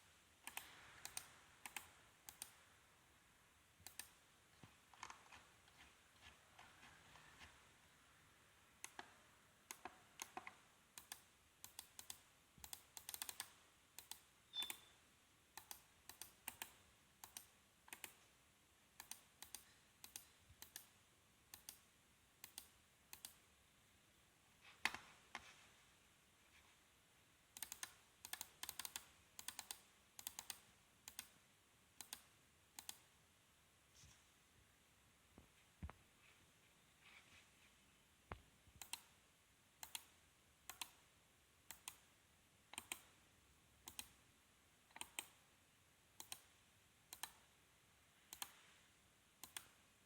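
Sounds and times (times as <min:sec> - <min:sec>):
computer mouse buttons clicking: 0:00.4 - 0:02.6, 0:03.8 - 0:07.6, 0:08.8 - 0:18.3, 0:19.0 - 0:23.4, 0:27.6 - 0:31.4, 0:32.0 - 0:33.1, 0:38.3 - 0:39.2, 0:39.8 - 0:41.0, 0:41.7 - 0:42.1, 0:42.7 - 0:43.2, 0:43.8 - 0:44.2, 0:44.9 - 0:45.4, 0:46.2 - 0:46.5, 0:47.1 - 0:47.5, 0:48.3 - 0:48.8, 0:49.4 - 0:49.8.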